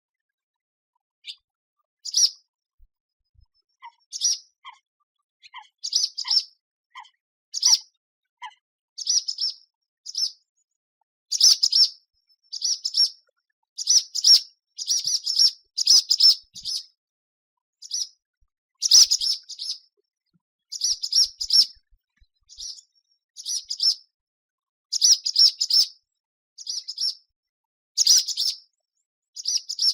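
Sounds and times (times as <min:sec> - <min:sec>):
swallow chirping: 0:02.0 - 0:02.4, 0:03.4 - 0:10.4, 0:20.7 - 0:21.8, 0:22.5 - 0:22.8.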